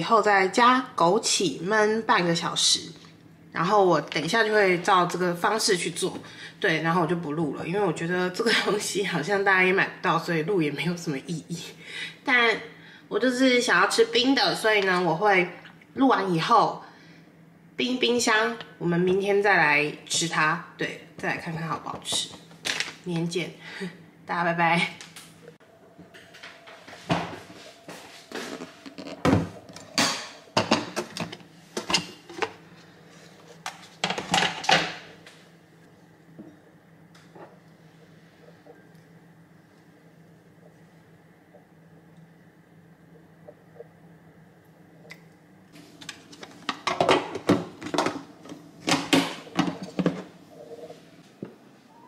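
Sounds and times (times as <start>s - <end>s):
dishes clattering: 28.4s - 32.6s, 34.0s - 35.1s, 46.6s - 50.3s.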